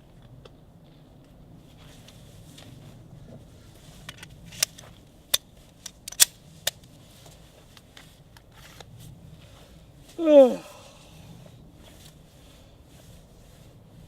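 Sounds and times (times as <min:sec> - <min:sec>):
pistol clicks and clacks: 0:04.1 - 0:06.9.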